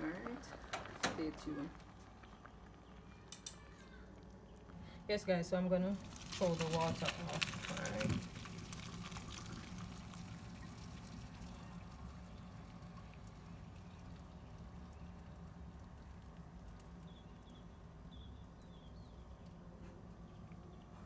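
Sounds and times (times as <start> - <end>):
water trickling and dripping: 5.9 - 21.0.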